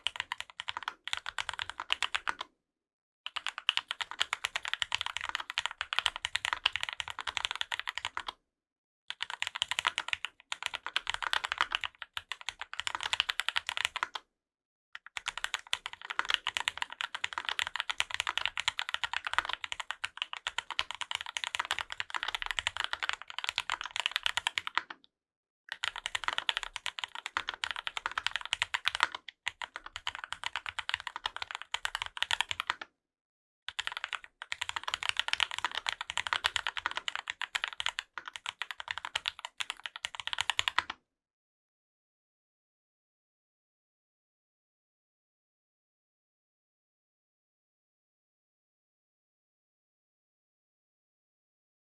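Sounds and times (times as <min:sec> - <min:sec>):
mechanical keyboard typing: 0:00.0 - 0:02.5, 0:03.3 - 0:08.3, 0:09.1 - 0:14.2, 0:15.0 - 0:25.0, 0:25.7 - 0:32.8, 0:33.7 - 0:41.0.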